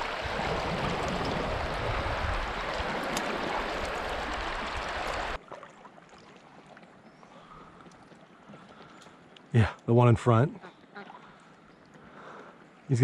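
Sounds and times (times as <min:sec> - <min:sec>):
creek water rushing: 0:00.0 - 0:06.2.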